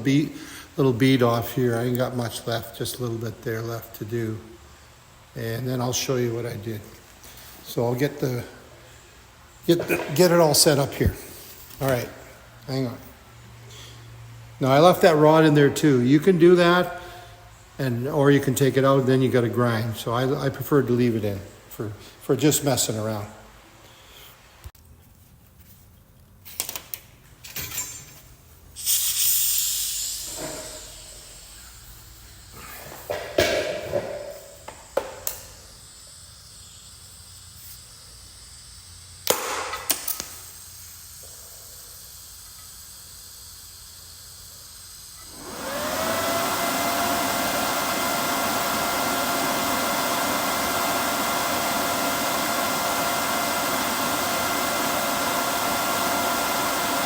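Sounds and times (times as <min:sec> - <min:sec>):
welding arc hissing: 0:28.7 - 0:47.6.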